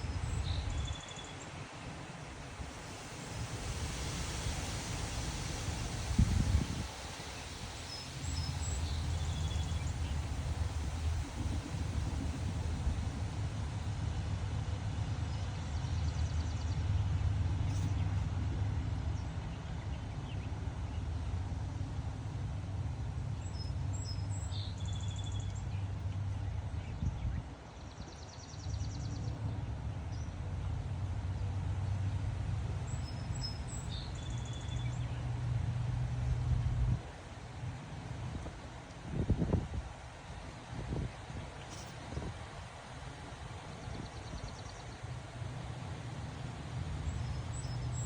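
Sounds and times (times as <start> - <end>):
wind buffeting microphone: 0.0 - 15.1, 26.7 - 27.6, 34.8 - 48.0.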